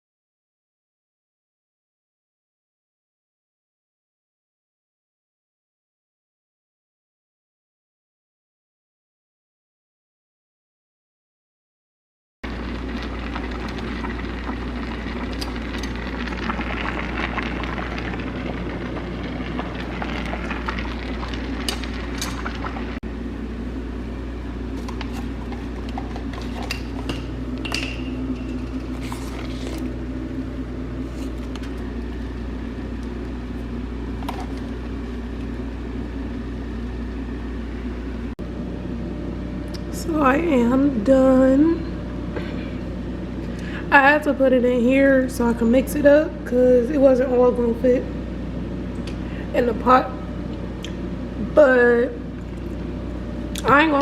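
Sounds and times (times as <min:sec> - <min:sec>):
steady low hum: 0:12.4 - 0:54.0.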